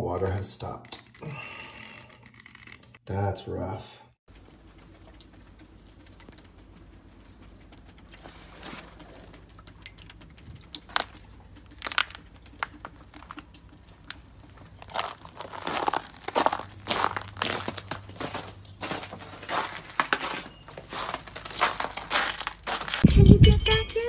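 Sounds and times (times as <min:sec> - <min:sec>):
crunching and crinkling: 0:04.3 - 0:23.1
steady low hum: 0:04.3 - 0:23.8.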